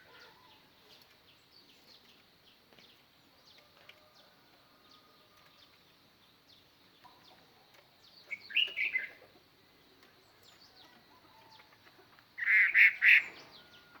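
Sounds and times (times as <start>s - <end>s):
faint bird chirps: 0.0s - 14.0s
bird song bursts: 8.0s - 9.2s, 12.4s - 14.0s.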